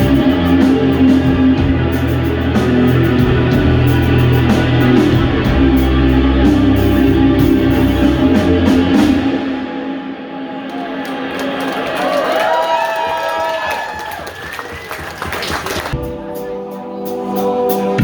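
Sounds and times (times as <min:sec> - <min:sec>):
live band playing: 0:00.0 - 0:12.2, 0:14.4 - 0:18.0.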